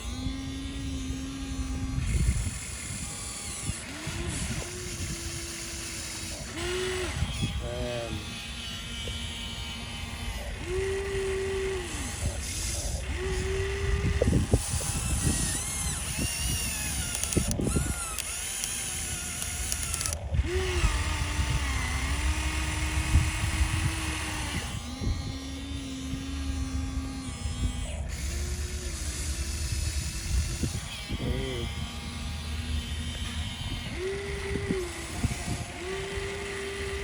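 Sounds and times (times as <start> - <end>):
small electric motors whining: 0.0 - 37.0
clunks of moving parts: 10.1 - 25.1.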